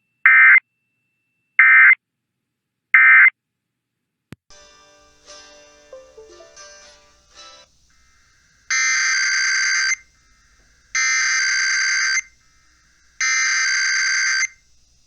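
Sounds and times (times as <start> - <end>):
music bed: 4.5 - 8.9
rapid data tone bursts: 7.7 - 15.0.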